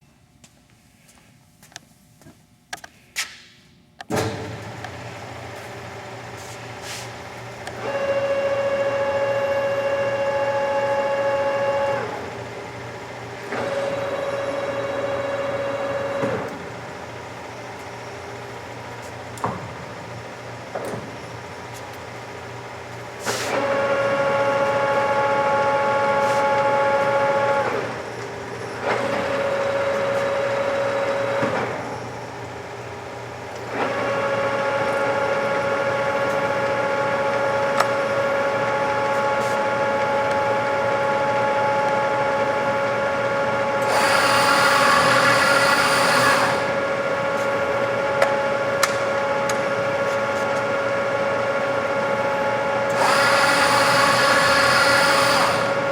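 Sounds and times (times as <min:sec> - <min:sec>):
lathe whining: 0:13.4 - 0:16.8, 0:43.4 - 0:50.0, 0:52.0 - 0:55.9.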